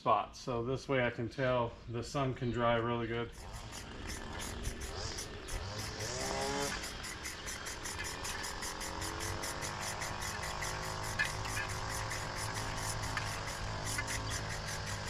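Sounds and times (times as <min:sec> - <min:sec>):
insects chirping: 0:03.3 - 0:15.0.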